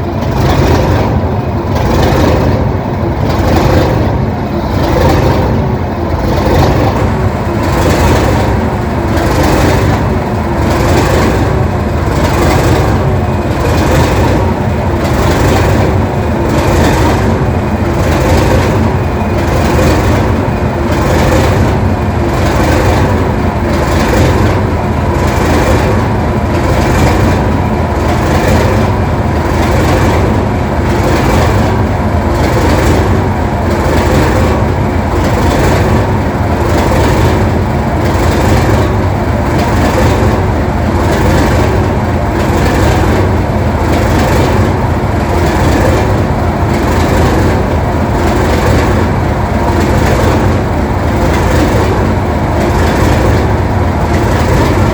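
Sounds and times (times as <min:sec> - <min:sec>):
diesel locomotive engine running: 0:00.0 - 0:54.9.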